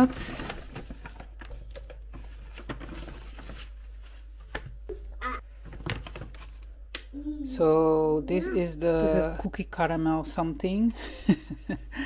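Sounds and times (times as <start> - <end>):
packaging clicks and rustles: 0.0 - 3.8, 5.7 - 6.8.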